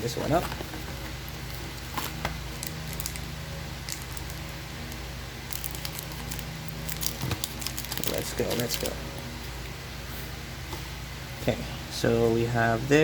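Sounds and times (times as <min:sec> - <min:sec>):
steady low hum: 0:00.0 - 0:13.0
packaging rustling and clicking: 0:00.2 - 0:09.0.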